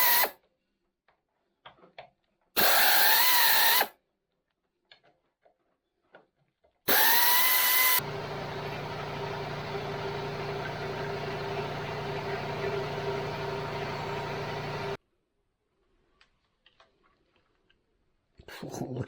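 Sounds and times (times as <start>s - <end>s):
power tool whining and humming: 6.9s - 15.0s.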